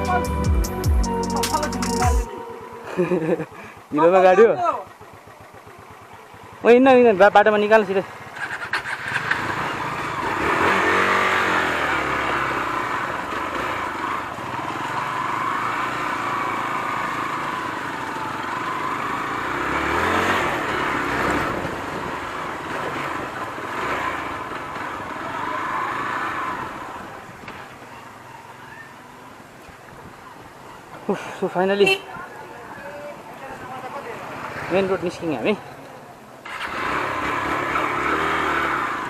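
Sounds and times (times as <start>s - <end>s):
motorcycle engine revving: 2.9s - 27.8s, 33.8s - 35.6s, 36.4s - 39.0s.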